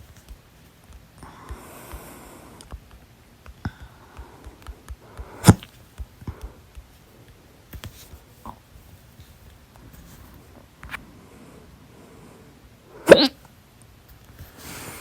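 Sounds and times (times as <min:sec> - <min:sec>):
soft breathy sound: 0:01.2 - 0:02.7, 0:03.6 - 0:06.6, 0:09.2 - 0:13.3, 0:14.4 - 0:15.0
person hiccuping: 0:13.0 - 0:13.4.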